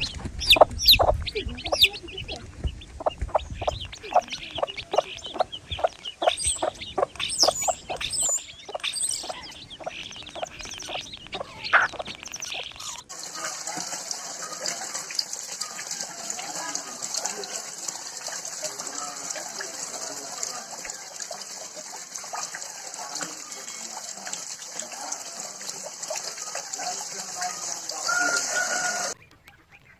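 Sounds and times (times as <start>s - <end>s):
high chirps: 0.0s - 13.1s
water gushing: 0.0s - 29.2s
chickens clucking: 0.0s - 29.9s.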